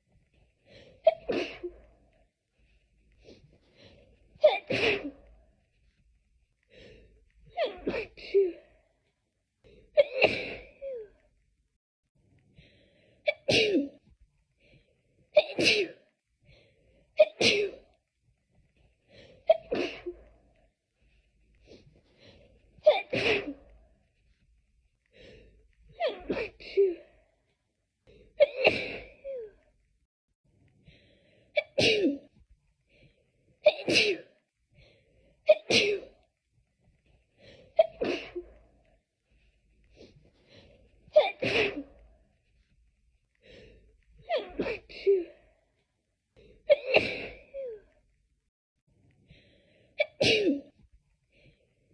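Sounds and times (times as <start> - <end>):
person sneezing: 4.4 - 5.2, 19.5 - 20.3, 22.9 - 23.6, 33.7 - 34.4, 41.2 - 42.0, 46.7 - 47.8, 50.0 - 50.7.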